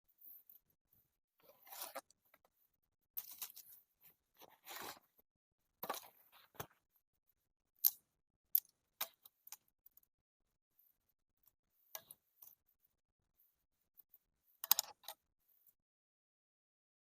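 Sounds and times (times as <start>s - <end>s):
handling rustling and scraping: 0.1s - 7.0s.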